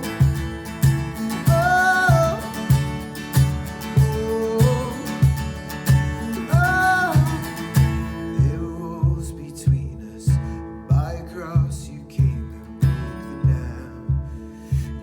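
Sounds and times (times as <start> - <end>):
acoustic guitar: 0.0 - 15.0
steady beat: 0.0 - 15.0
person singing: 1.4 - 3.0, 3.9 - 10.3.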